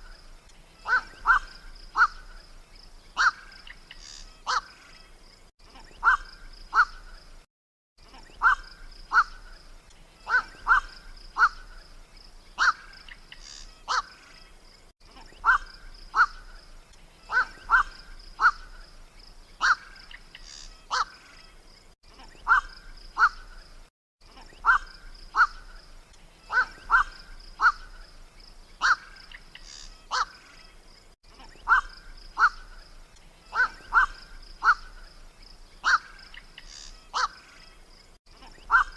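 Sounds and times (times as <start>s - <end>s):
heron calls: 0.8s - 2.3s, 3.2s - 4.8s, 5.9s - 7.1s, 8.3s - 9.5s, 10.2s - 11.8s, 12.6s - 14.2s, 15.2s - 16.6s, 17.3s - 18.8s, 19.6s - 21.2s, 22.2s - 23.6s, 24.4s - 25.8s, 26.5s - 28.0s, 28.8s - 30.4s, 31.4s - 35.1s, 35.8s - 37.5s, 38.5s - 38.9s.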